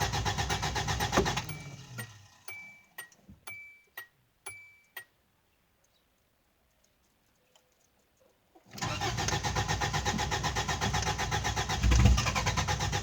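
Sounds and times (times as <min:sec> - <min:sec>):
starter motor cranking engine: 0:00.0 - 0:02.6, 0:08.8 - 0:13.0.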